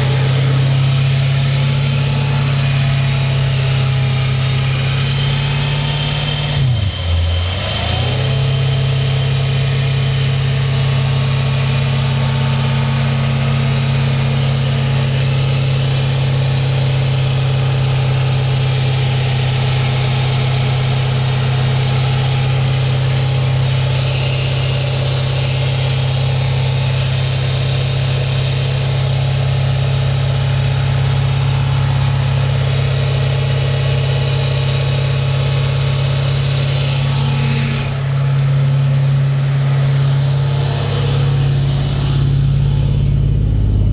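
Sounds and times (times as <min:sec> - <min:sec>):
car engine idling with knock: 0:09.7 - 0:43.9.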